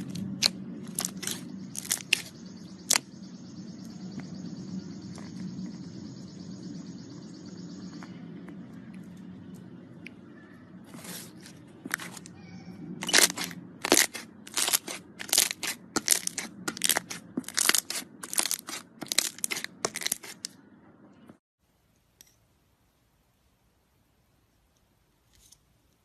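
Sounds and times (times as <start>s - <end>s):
slime squelching crunchily: 0.0s - 3.0s, 10.8s - 12.4s, 13.0s - 20.5s.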